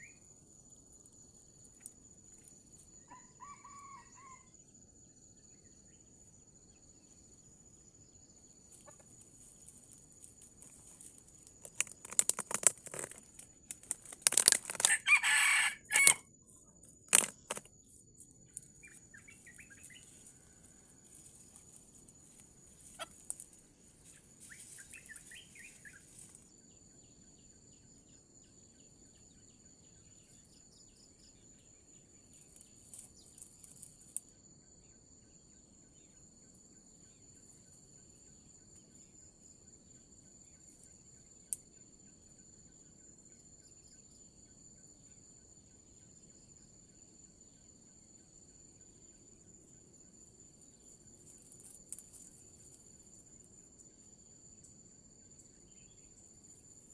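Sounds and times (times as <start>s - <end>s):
insects trilling: 0.0s - 56.9s
bird chirping: 17.4s - 20.2s, 24.0s - 27.9s.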